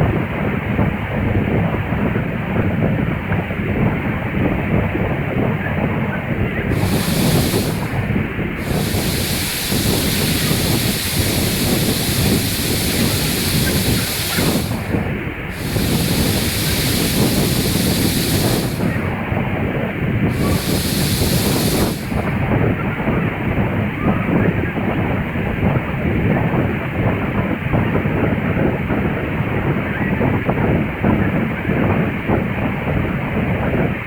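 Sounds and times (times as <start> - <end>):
wind noise on microphone: 0.0 - 34.0.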